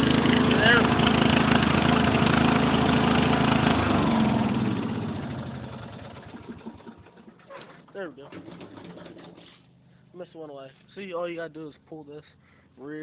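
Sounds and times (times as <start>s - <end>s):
lawn mower engine running: 0.0s - 9.6s.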